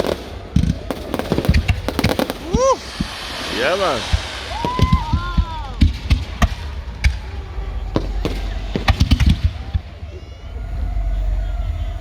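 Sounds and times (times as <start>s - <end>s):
fireworks bangs and pops: 0.0s - 10.2s.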